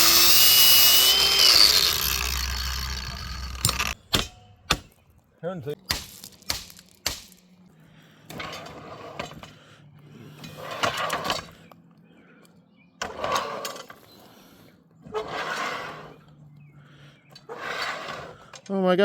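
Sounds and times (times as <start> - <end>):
turntable rollers scraping: 15.0 - 16.3, 17.4 - 18.5.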